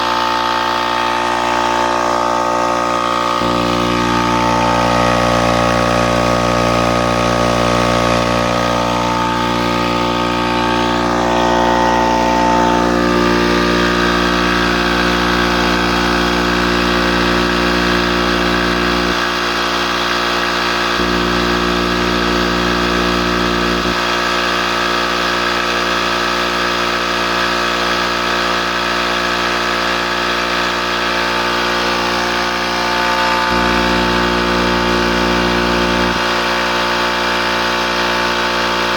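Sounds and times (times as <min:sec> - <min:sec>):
air compressor droning: 0:00.0 - 0:38.9
deep hum: 0:00.1 - 0:19.4, 0:20.8 - 0:24.0, 0:30.7 - 0:37.1.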